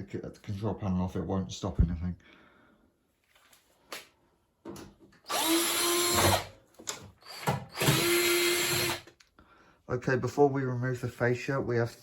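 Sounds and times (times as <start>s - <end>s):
electric screwdriver motor spinning: 5.3s - 6.5s, 7.3s - 9.1s.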